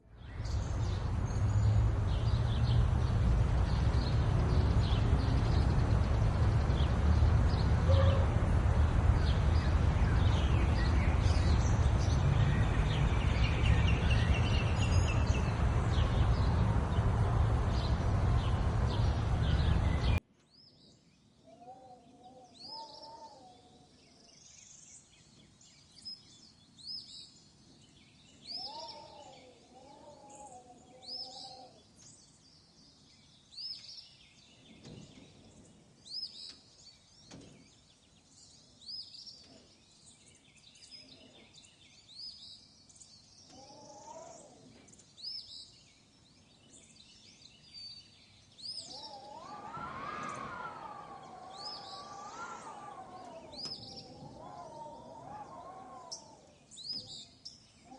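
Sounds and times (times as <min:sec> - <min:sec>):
birds chirping: 0:00.2 - 0:57.9
loud rushing noise: 0:00.4 - 0:20.2, 0:49.3 - 0:53.2
low wavering bird calls: 0:00.4 - 0:20.2, 0:21.5 - 0:24.0, 0:28.4 - 0:32.0, 0:43.4 - 0:45.5, 0:47.7 - 0:57.9.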